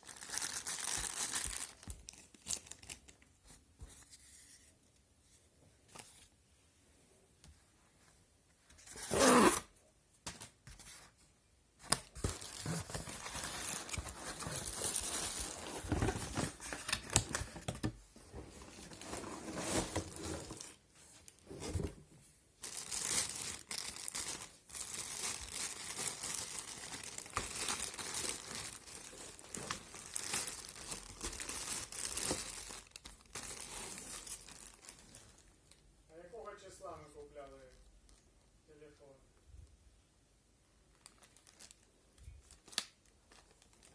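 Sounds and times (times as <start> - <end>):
packaging crinkling and rustling: 0.0 - 3.3, 11.8 - 22.0, 22.6 - 35.9, 40.9 - 43.9
packaging ripping: 12.2 - 17.5.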